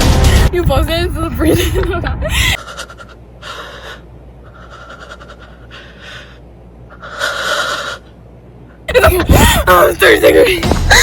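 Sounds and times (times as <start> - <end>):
heavy breathing: 2.3 - 8.0.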